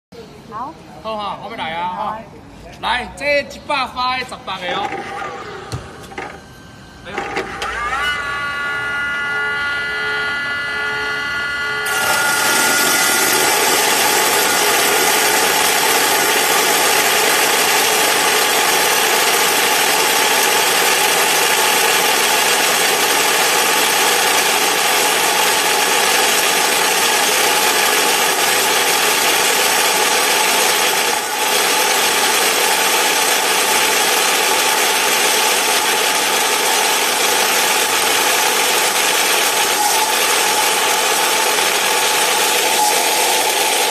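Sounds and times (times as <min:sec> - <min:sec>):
saw motor whining: 0:07.0 - 0:43.9
saw cutting noise: 0:07.5 - 0:43.9.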